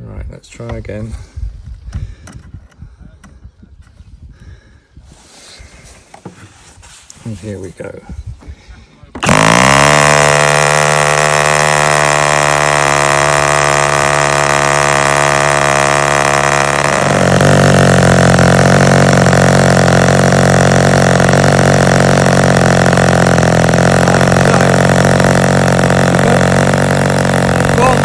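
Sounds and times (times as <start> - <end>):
model aero engine running: 9.1 - 28.0.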